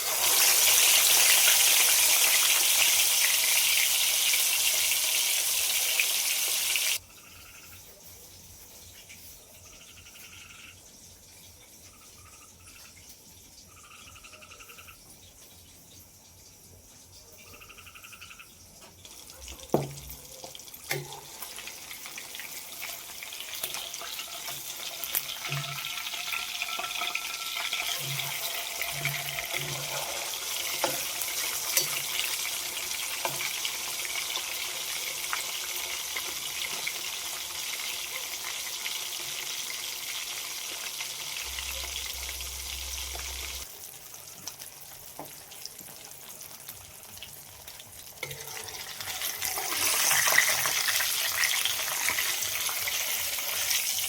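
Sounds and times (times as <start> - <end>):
food sizzling in hot oil: 0.0 - 7.0, 19.0 - 54.0.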